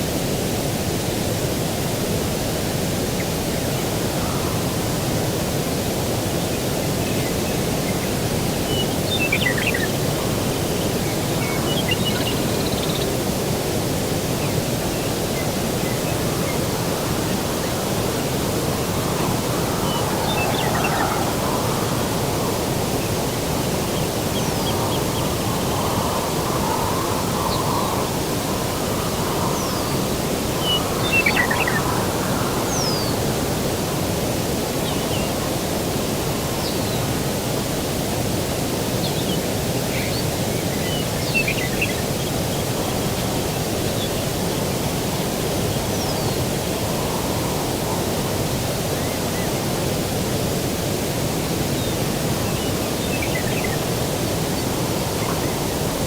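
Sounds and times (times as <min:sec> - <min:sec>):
distant surf: 0:00.0 - 0:56.0
breeze: 0:02.6 - 0:37.5.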